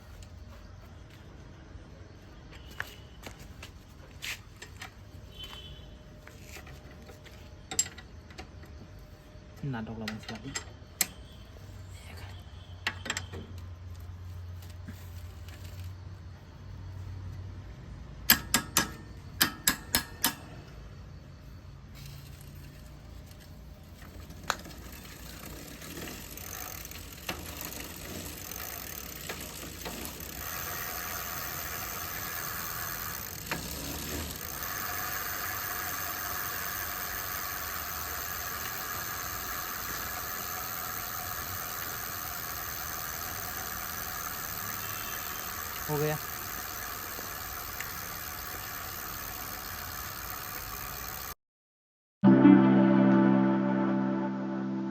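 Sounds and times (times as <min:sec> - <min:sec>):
bicycle drivetrain whirring rattle: 0:02.6 - 0:12.0, 0:12.6 - 0:51.4
sharp metallic clicks: 0:18.3 - 0:20.5.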